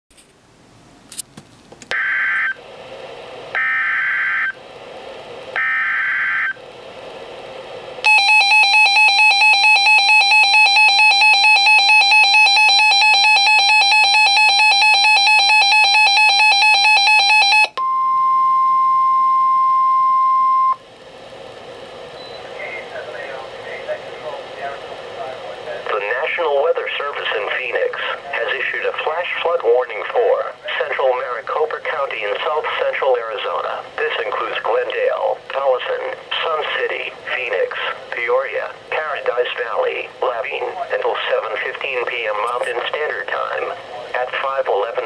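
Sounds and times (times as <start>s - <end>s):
pulsing alarm beeps: 1.9s - 2.6s, 3.6s - 4.6s, 5.6s - 6.6s, 8.0s - 20.8s
steady warning tone: 1.9s - 2.6s, 3.5s - 4.6s, 5.5s - 6.6s, 8.0s - 20.8s
faint radio hiss: 2.6s - 3.6s, 4.4s - 5.6s, 6.6s - 8.1s, 20.9s - 45.0s.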